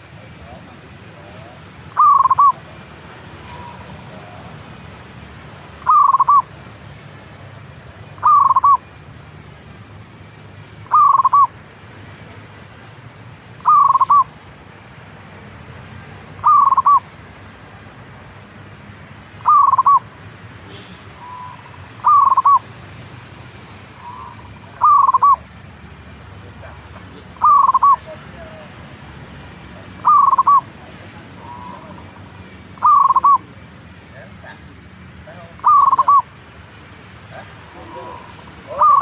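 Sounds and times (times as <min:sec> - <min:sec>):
dove cooing: 0:01.2 - 0:02.8, 0:05.8 - 0:06.5, 0:08.2 - 0:08.8, 0:10.9 - 0:11.6, 0:13.6 - 0:14.4, 0:16.4 - 0:17.1, 0:19.4 - 0:20.1, 0:21.2 - 0:22.7, 0:24.0 - 0:25.5, 0:26.6 - 0:28.4, 0:29.8 - 0:32.2, 0:32.8 - 0:33.6, 0:35.5 - 0:36.3, 0:37.4 - 0:39.0.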